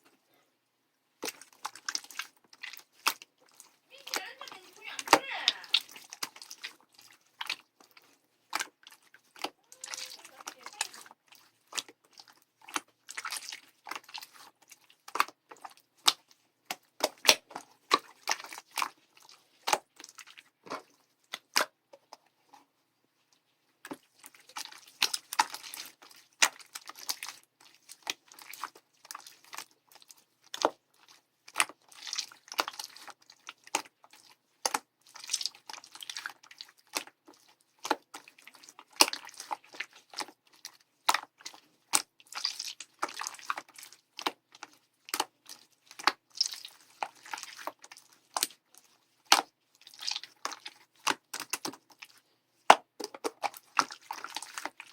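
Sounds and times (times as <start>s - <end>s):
slime squished by hand: 23.9s - 54.9s.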